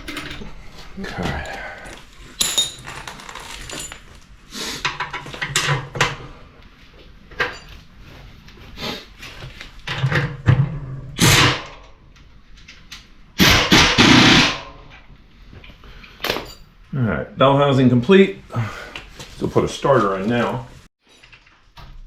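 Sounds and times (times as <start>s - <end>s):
metal tools clanking and knocking: 0.0s - 0.6s, 2.4s - 4.2s, 7.3s - 7.9s, 21.0s - 22.0s
loud rasping burst: 13.4s - 14.7s.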